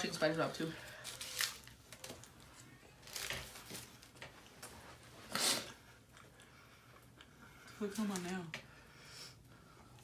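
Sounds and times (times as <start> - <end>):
taco crunching: 1.0 - 2.4.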